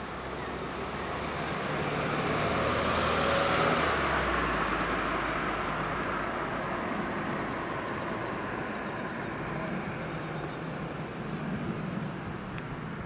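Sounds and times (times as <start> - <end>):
insects chirping: 0.3 - 2.4, 4.4 - 6.8, 7.8 - 9.4.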